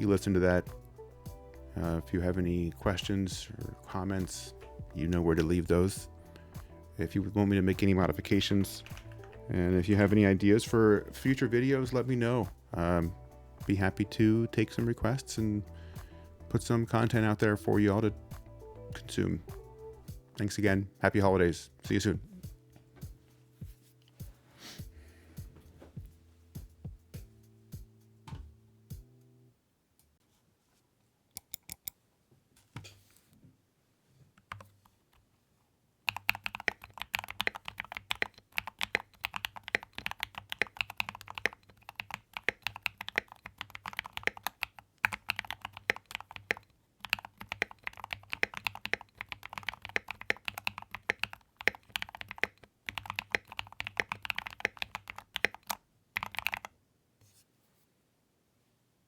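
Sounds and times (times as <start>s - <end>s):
mechanical keyboard typing: 31.4s - 31.9s, 36.1s - 56.7s.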